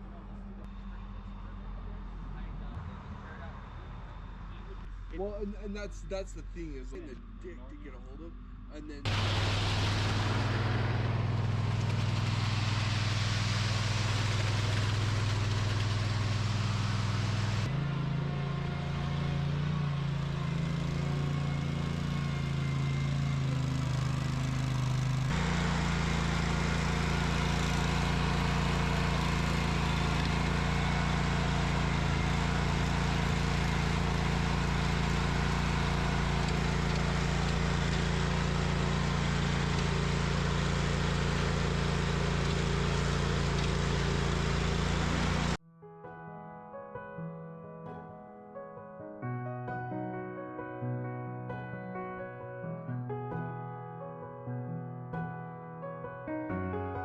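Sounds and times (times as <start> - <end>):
engine running steadily: 0.0 - 45.6.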